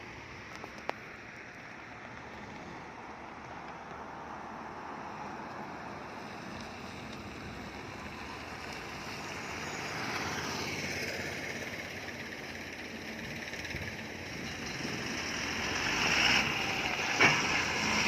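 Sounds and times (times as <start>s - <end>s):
heavy vehicle passing: 4.7s - 18.0s.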